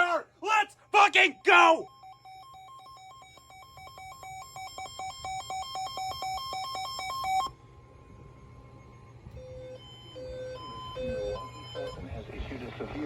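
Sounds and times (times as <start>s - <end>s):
two-pitch beeping alarm warble: 0.0s - 7.5s, 9.4s - 12.0s.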